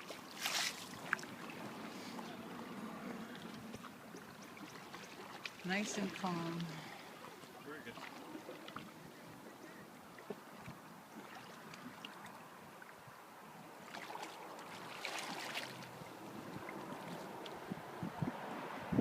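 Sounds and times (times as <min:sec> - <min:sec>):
water splashing: 0:00.0 - 0:18.8
river water lapping and trickling: 0:00.0 - 0:19.0
wind on microphone: 0:16.3 - 0:19.0.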